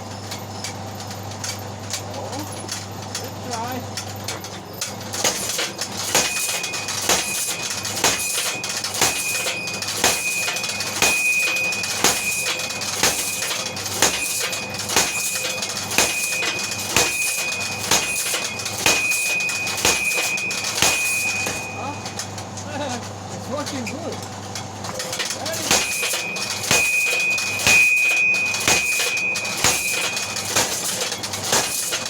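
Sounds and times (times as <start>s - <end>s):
steady running noise: 1.0s - 32.0s
power hammer striking metal bar: 4.0s - 22.6s, 24.9s - 32.0s
short ringing tone: 6.2s - 22.6s, 25.7s - 31.0s.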